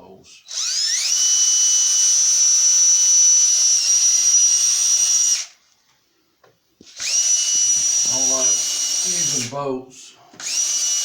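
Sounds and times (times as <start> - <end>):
electric drill whining: 0.4 - 5.6, 6.8 - 9.6, 10.4 - 11.0.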